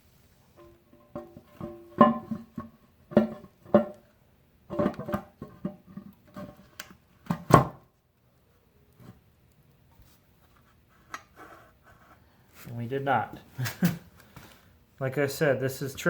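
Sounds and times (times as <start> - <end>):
metal knocks and clunks: 0.6 - 4.0.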